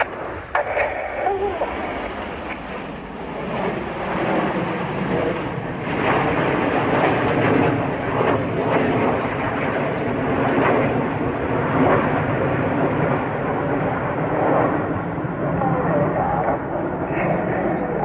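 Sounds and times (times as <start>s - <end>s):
jet engines rushing: 0.0s - 18.0s.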